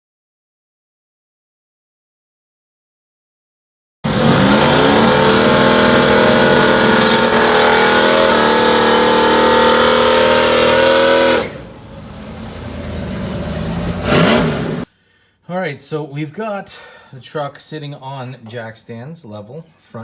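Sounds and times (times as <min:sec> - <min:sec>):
truck engine at full throttle: 0:04.0 - 0:14.9
rising rush: 0:04.1 - 0:14.9.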